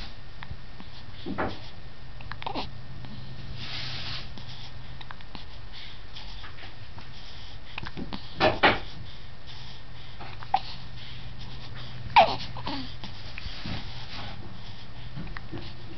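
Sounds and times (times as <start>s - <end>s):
baby hiccupping: 2.3s - 2.7s, 12.2s - 12.9s.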